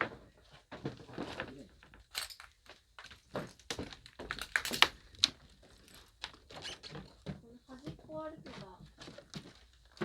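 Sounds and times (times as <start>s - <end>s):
footsteps crunching over debris: 5.3s - 10.0s.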